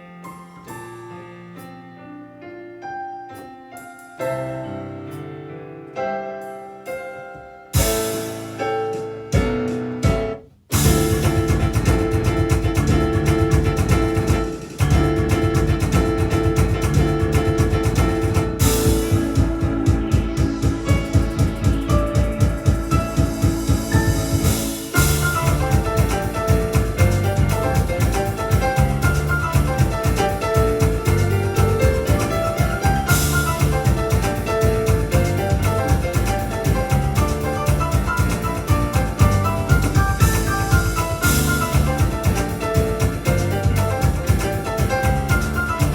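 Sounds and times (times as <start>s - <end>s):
drum machine rhythm: 7.8s - 45.9s.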